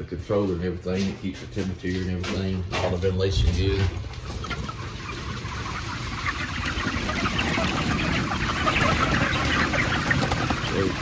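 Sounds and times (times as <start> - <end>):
chickens peeping and clucking: 0.0 - 11.0.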